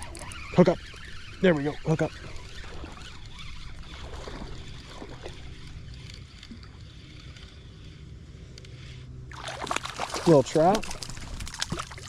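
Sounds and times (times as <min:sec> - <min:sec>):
faint ticks: 0:08.5 - 0:09.0
wind rumbling on microphone: 0:09.3 - 0:12.0.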